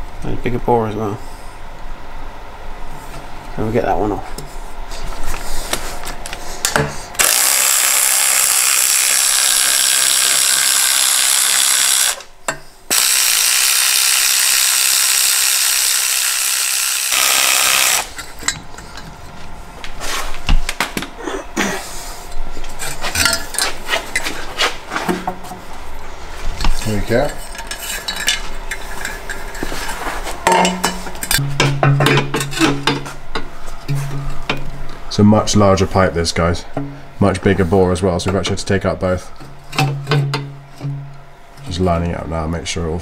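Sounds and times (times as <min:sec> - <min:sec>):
air ratchet hissing: 0:07.2 - 0:12.3, 0:12.9 - 0:18.1
tools and metal parts clinking: 0:22.8 - 0:24.3, 0:26.8 - 0:29.7, 0:30.5 - 0:33.0.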